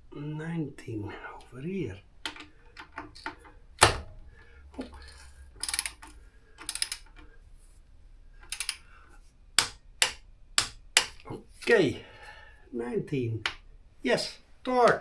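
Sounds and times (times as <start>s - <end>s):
torque wrench ratcheting: 5.0s - 7.1s, 8.5s - 8.8s
torque wrench sharp clicks: 5.6s - 7.2s, 8.4s - 8.8s, 9.6s - 11.2s.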